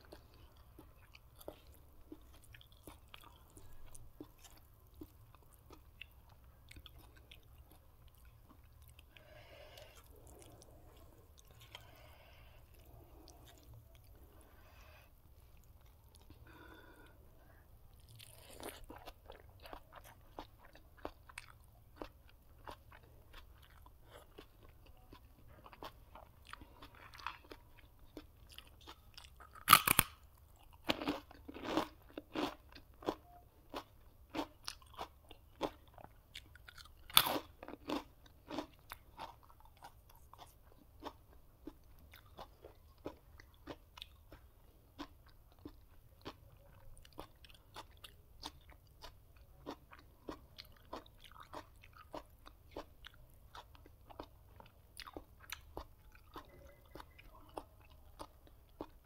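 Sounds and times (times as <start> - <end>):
chewing and crunching food: 0.0 - 59.0
loud crunchy bites: 29.4 - 30.2, 36.8 - 38.7.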